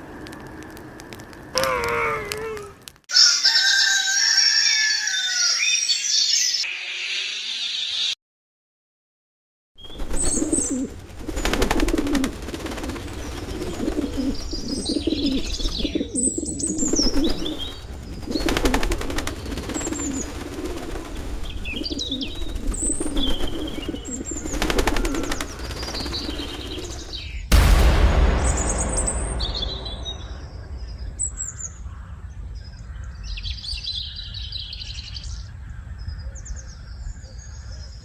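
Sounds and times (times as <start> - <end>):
wings fluttering: 0.0 - 3.0, 9.8 - 27.7
small birds chirping: 9.8 - 27.5
pigeons cooing: 9.9 - 27.0.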